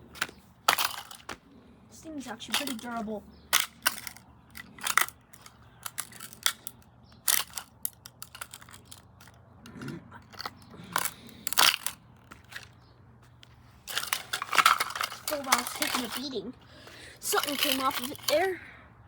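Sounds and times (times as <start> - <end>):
hard plastic cracking and crunching: 3.5 - 12.8, 13.9 - 16.2.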